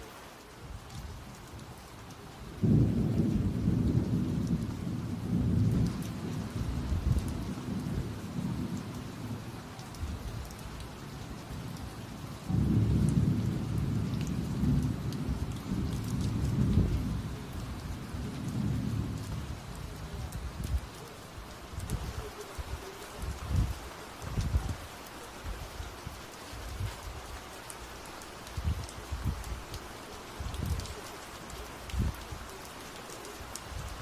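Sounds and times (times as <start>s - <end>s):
rain falling: 0.0s - 34.0s
thunder rumbling: 2.6s - 21.0s.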